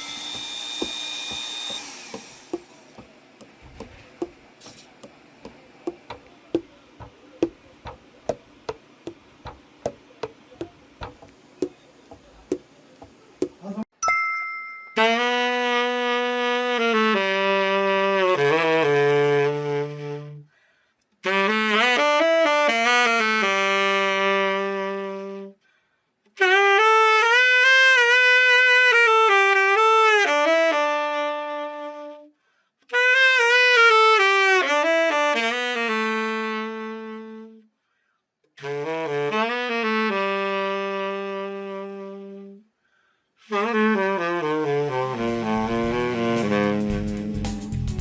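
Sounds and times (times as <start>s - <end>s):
tenor saxophone solo: 15.0s - 20.5s, 21.2s - 25.6s, 26.4s - 37.7s, 38.6s - 42.7s, 43.4s - 47.8s.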